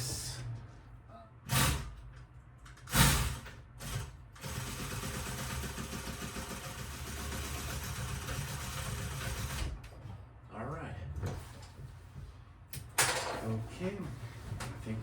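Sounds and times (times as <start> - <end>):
sewing machine running: 2.9 - 9.7.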